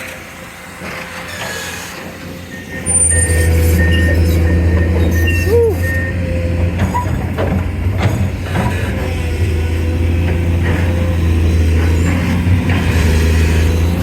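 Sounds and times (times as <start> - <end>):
excavator diesel engine droning: 0.0 - 14.0
short high beeps: 2.5 - 6.2.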